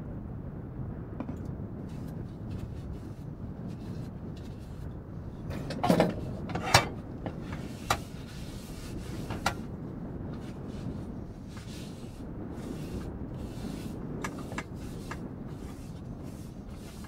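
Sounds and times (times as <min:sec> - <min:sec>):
steady low rumble: 0:00.0 - 0:17.0
knocks and clatters: 0:05.4 - 0:08.1, 0:09.1 - 0:09.7.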